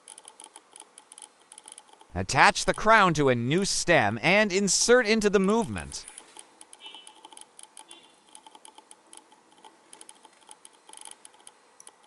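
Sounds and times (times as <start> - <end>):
small metallic clicks: 0.0 - 2.2, 5.5 - 12.0.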